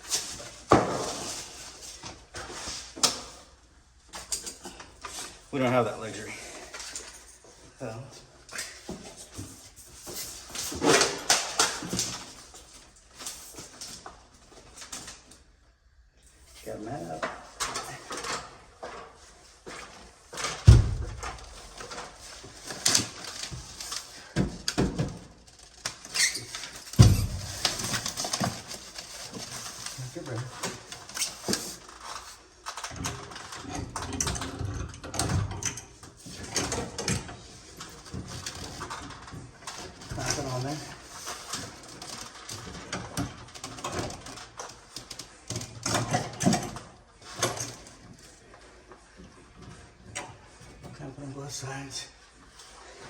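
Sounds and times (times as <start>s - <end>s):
gear knocking and rustling: 25.4s - 30.0s
heavy thumps: 27.0s - 27.8s.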